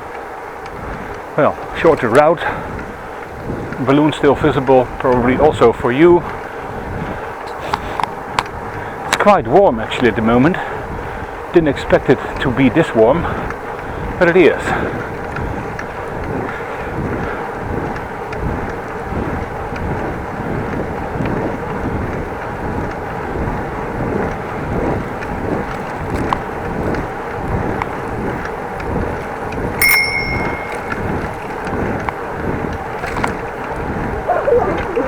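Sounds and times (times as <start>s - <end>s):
bicycle tyres rumbling on path: 0.0s - 29.8s, 31.0s - 35.0s
wind buffeting microphone: 0.0s - 35.0s
bicycle bell ringing: 29.8s - 31.6s.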